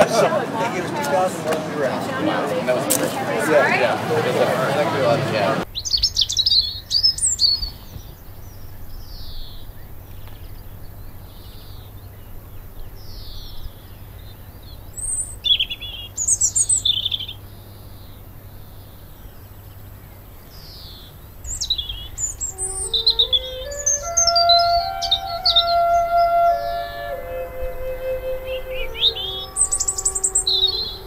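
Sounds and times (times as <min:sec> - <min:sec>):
robin singing: 0:05.5 - 0:31.0.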